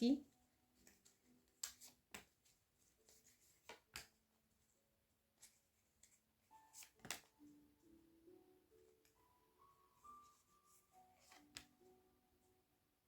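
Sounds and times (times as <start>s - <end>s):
cards clicking and flicking: 0.8s - 4.2s, 6.7s - 7.3s.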